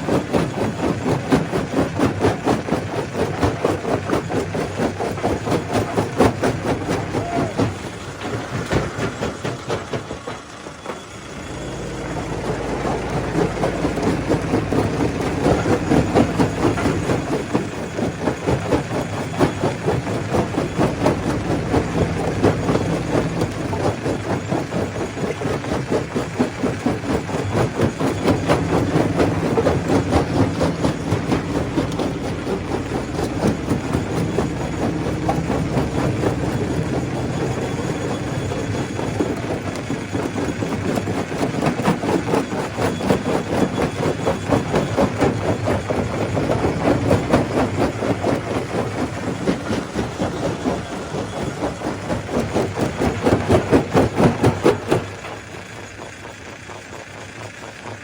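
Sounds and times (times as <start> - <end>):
stone crusher rattling: 11.0 - 55.4.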